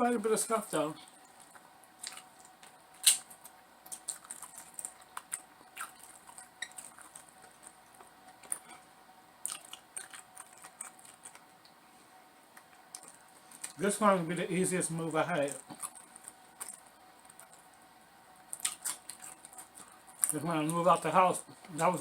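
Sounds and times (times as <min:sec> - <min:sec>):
crisp clicks and crackles: 0:01.0 - 0:08.8, 0:09.4 - 0:11.8, 0:12.5 - 0:13.9, 0:15.3 - 0:17.8, 0:18.4 - 0:22.0
person chewing: 0:01.0 - 0:11.8, 0:12.5 - 0:13.8, 0:15.4 - 0:17.8, 0:18.4 - 0:20.8.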